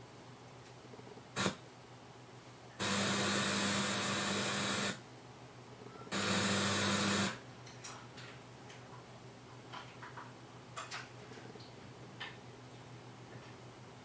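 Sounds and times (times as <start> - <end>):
radio static hiss: 0.9 - 1.6, 2.8 - 5.0, 5.8 - 7.4.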